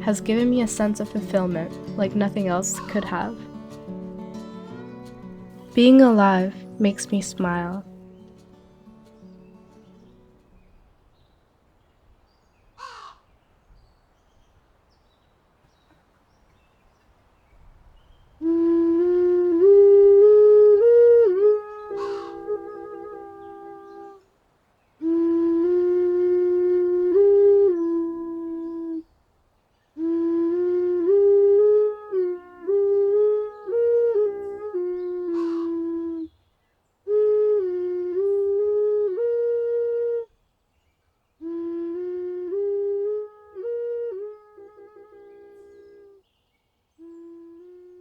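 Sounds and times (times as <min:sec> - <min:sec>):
solo flute melody: 0:00.0 - 0:10.2, 0:18.4 - 0:24.2, 0:25.0 - 0:29.0, 0:30.0 - 0:36.4, 0:37.0 - 0:40.4, 0:41.4 - 0:46.2, 0:47.0 - 0:48.0.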